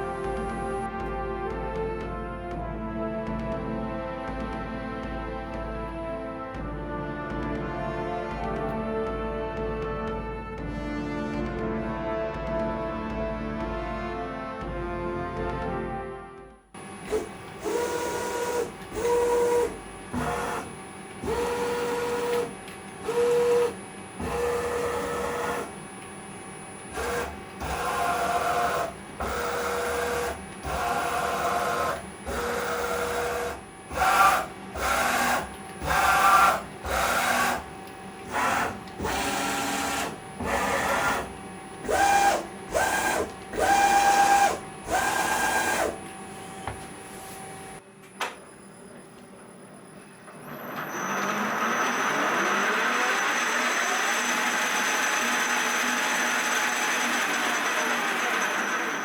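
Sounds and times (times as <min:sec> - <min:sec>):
machine drive motors whining: 0:00.0 - 0:01.0, 0:16.8 - 0:59.0.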